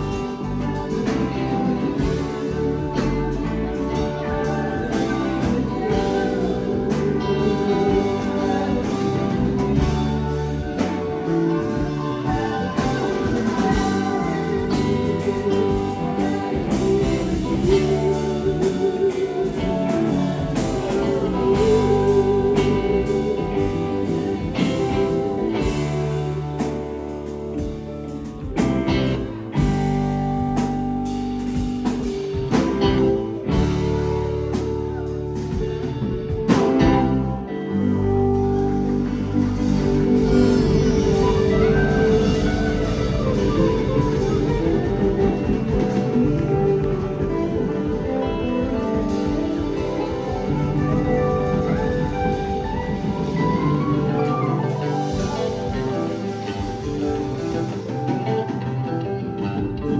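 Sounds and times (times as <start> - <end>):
guitar line: 0.0 - 59.9
live band playing: 0.0 - 59.9.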